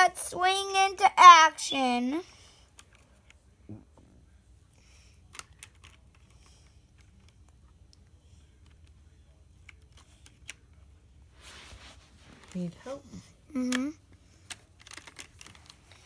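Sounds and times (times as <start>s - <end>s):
plastic toys clicking: 5.3s - 6.4s, 13.7s - 16.0s.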